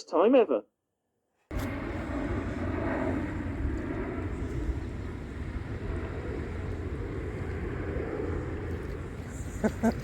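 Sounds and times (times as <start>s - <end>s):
wind: 0.0s - 10.0s.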